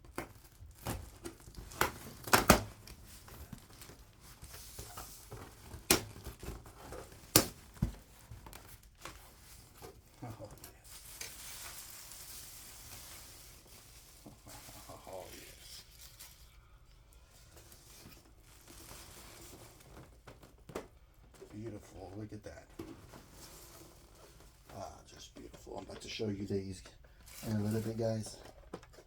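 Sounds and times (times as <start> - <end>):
packaging rustling and crinkling: 0.0 - 29.0.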